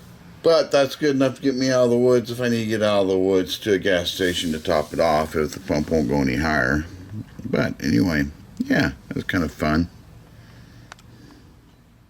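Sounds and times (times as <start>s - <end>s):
air compressor humming: 3.5s - 12.0s.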